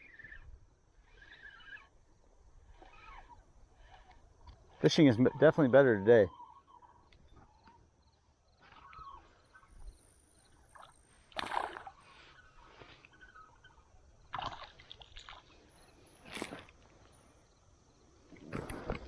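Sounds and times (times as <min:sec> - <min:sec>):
water sloshing around kayak: 0:10.5 - 0:17.4.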